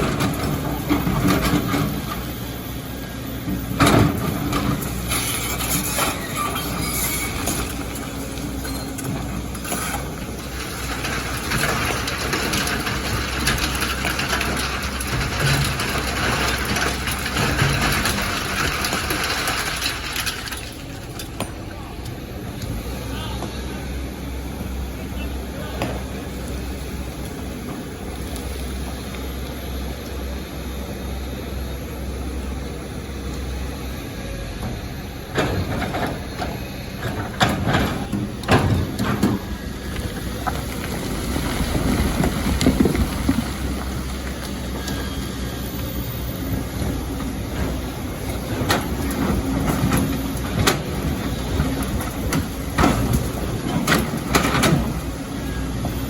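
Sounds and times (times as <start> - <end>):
diesel engine running: 0.0 - 56.0
rocks and sand falling: 38.8 - 45.4.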